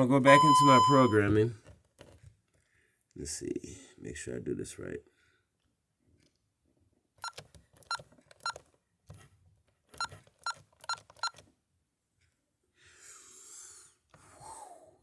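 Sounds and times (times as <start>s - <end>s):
alarm keypad beeping: 0.3s - 1.5s.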